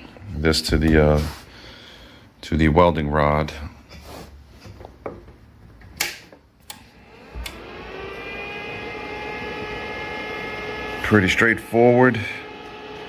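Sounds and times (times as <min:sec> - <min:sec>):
cooling fan whirring whine: 0:05.9 - 0:13.0.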